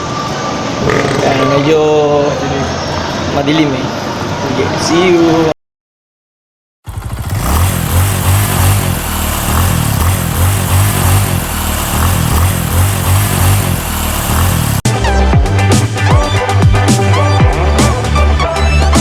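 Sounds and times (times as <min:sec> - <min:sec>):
road noise: 0:06.9 - 0:14.8
vehicle engine running: 0:06.9 - 0:14.8.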